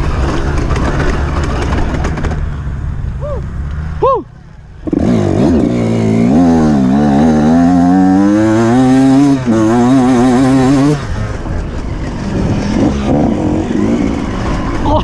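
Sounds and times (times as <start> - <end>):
motorcycle engine revving: 4.8 - 15.0.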